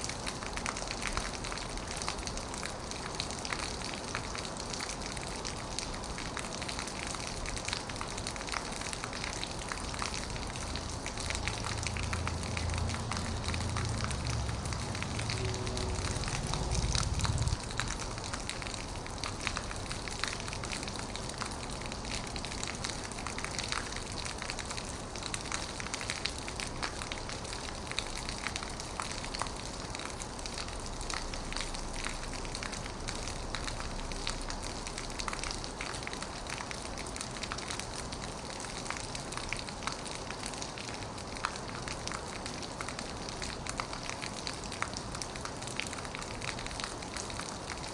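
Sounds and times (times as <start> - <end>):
heavy rain on metal roof: 0.0 - 47.9
deep low rumble: 12.8 - 17.6.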